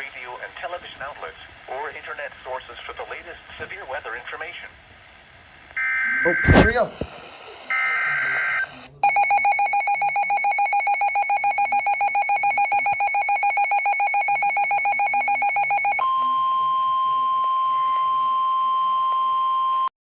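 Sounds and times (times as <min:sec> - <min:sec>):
high data-burst tones: 0:05.8 - 0:16.0
pulsing electronic alarm tone: 0:07.7 - 0:19.9.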